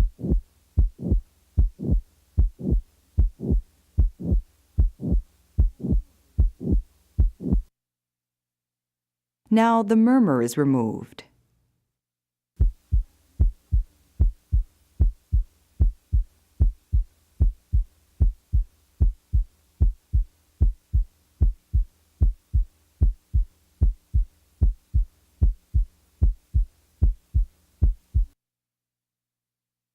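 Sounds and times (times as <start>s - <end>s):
faint steady hum: 0.0s - 7.7s, 12.6s - 28.4s
heartbeat lub-dub: 0.0s - 7.7s, 12.6s - 28.4s.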